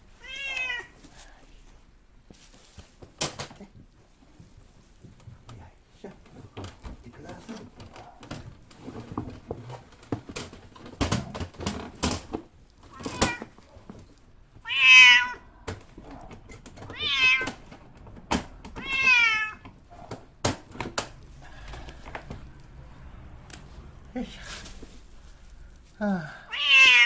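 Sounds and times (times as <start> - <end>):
cat meowing: 0.2 - 1.0, 12.8 - 13.8, 14.6 - 17.8, 18.7 - 19.8, 26.4 - 27.0
knocks and rustling: 2.2 - 26.0.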